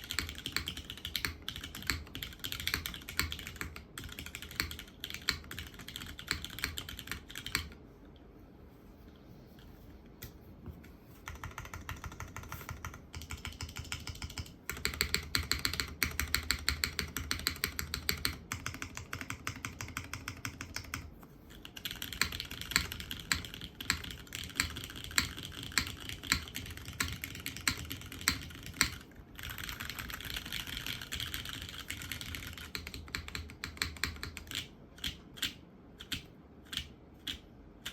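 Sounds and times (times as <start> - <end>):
mechanical keyboard typing: 0.0 - 7.8, 11.2 - 37.9.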